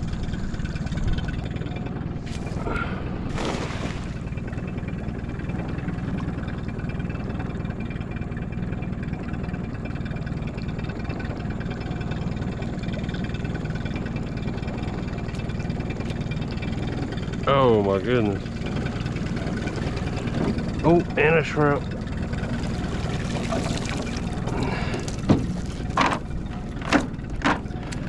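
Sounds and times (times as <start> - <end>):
boat motor idling: 0.0 - 28.0
short rush of noise: 2.2 - 4.4.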